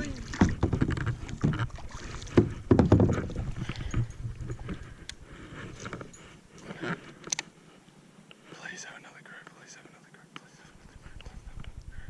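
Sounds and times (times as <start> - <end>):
knocks and thumps against kayak: 0.0 - 4.9.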